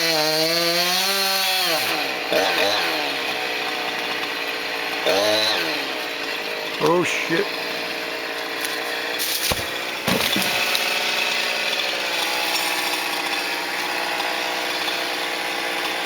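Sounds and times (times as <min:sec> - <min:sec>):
chainsaw cutting wood: 0:00.0 - 0:16.0
sharp knocks: 0:09.4 - 0:10.7.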